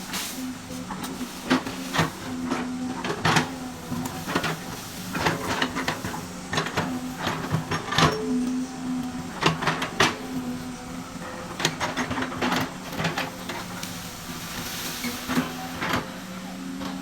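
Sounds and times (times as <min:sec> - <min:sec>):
excavator motor hum: 0:00.0 - 0:17.0.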